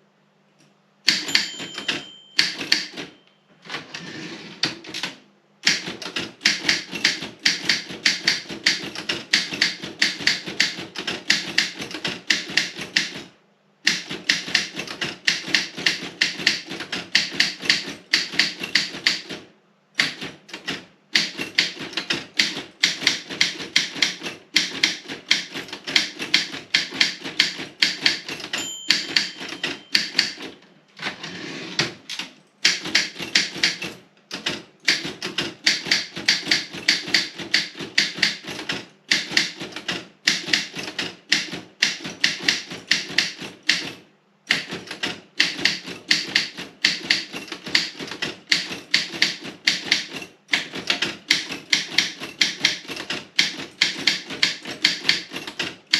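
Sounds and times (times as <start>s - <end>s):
typewriter keys striking: 1.1s - 3.2s, 4.6s - 55.9s
typewriter bell ringing: 1.1s - 3.3s, 28.2s - 30.6s.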